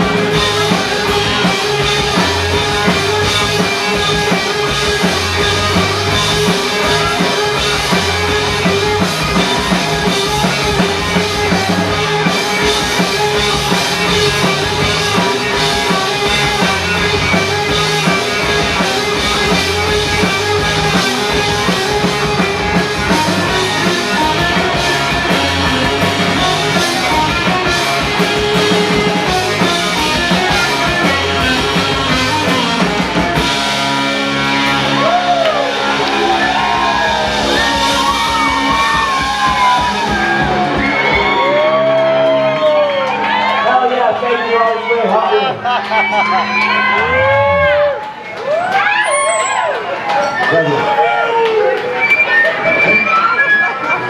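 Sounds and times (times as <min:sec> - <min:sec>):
drum kit beat: 0:00.0 - 0:42.2
instrumental rock music: 0:00.0 - 0:48.6, 0:50.0 - 0:54.0.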